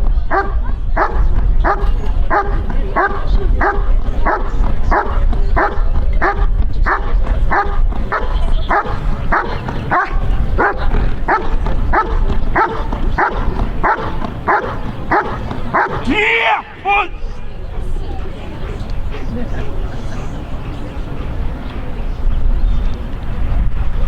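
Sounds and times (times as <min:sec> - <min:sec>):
dog barking: 0:00.3 - 0:16.6.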